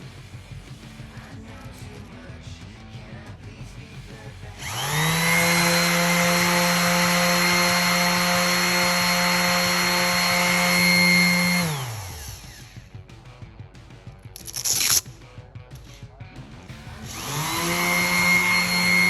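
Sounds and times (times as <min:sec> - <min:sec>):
orbital sander humming: 0:04.6 - 0:12.8, 0:16.7 - 0:19.0.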